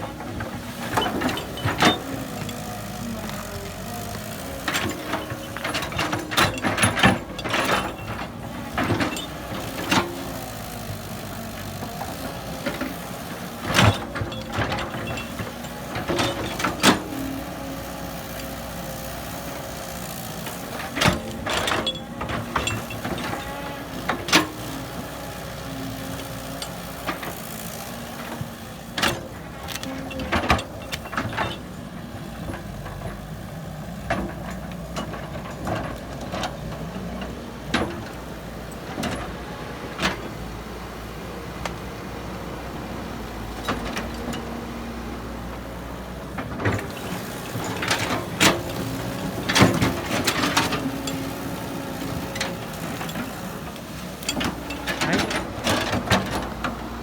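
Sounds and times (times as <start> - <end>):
machinery knocks and clanks: 0.0 - 40.4
excavator diesel engine running: 0.0 - 57.0.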